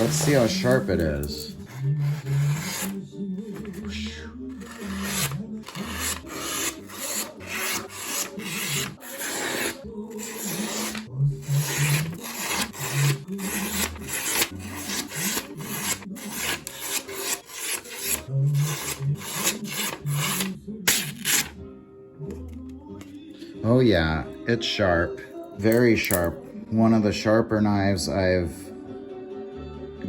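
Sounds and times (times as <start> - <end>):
blade slicing through paper: 0.0 - 21.6.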